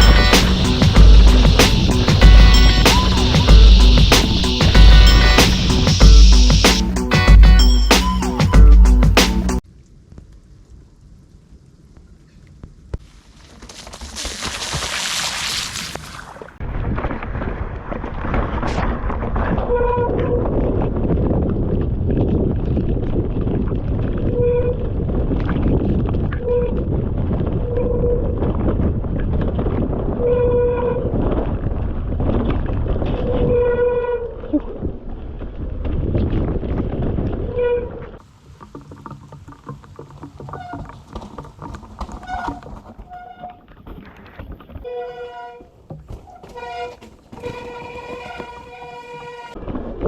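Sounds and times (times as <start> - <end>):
short pitched buzzes: 0.0 - 9.6
wind and trail noise: 9.6 - 50.0.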